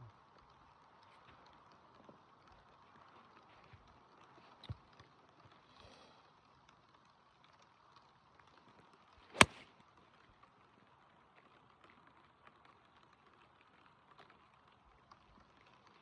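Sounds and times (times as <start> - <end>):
light rain patter: 0.0 - 16.0
golf club striking ball: 9.4 - 9.6.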